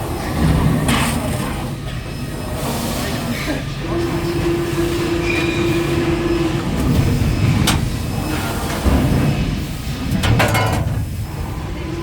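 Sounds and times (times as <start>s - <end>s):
machine rumble: 6.4s - 12.0s
metal clacks: 10.1s - 11.1s.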